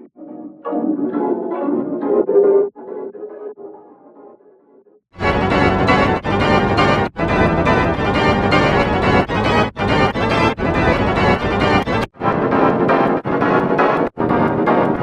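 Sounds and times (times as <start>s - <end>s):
processed organ-like music: 5.2s - 12.1s.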